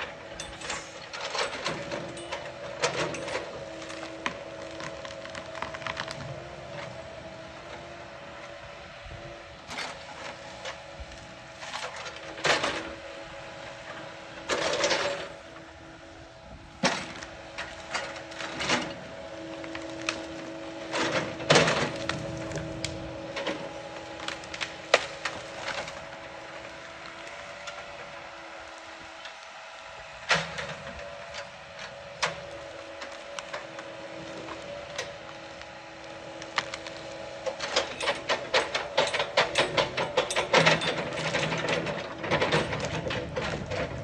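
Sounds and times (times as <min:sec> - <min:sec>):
excavator hum: 0:00.0 - 0:44.0
tree cracking and splintering: 0:01.3 - 0:08.6, 0:16.8 - 0:39.3.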